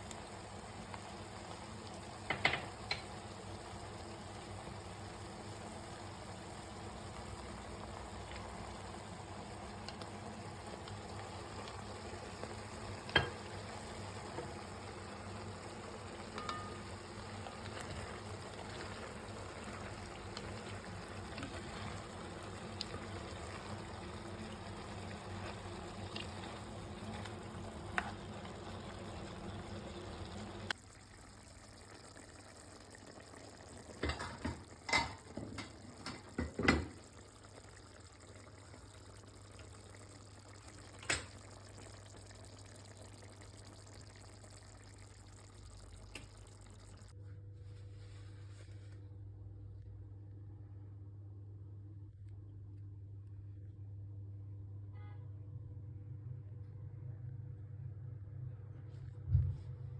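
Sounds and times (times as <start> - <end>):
food sizzling in oil: 0.0 - 47.1.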